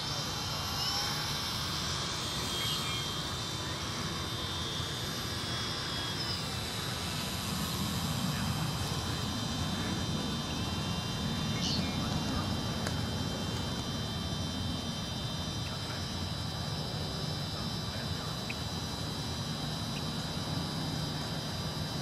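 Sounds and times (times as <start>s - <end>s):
rc airplane motor whining: 0.0s - 22.0s.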